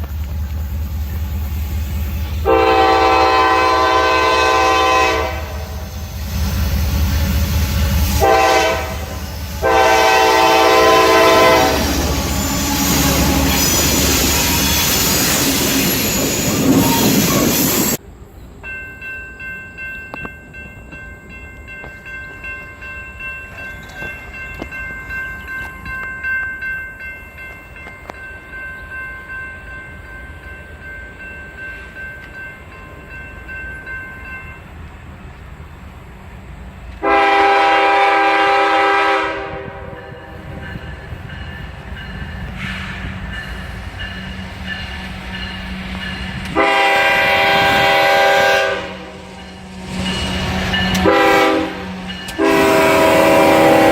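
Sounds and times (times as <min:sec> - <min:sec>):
train passing: 0:00.0 - 0:53.9
railroad crossing bell ringing: 0:00.1 - 0:35.7, 0:37.0 - 0:53.9
locomotive air horn blast: 0:02.4 - 0:06.1, 0:07.1 - 0:15.1, 0:37.0 - 0:40.2, 0:46.5 - 0:53.9.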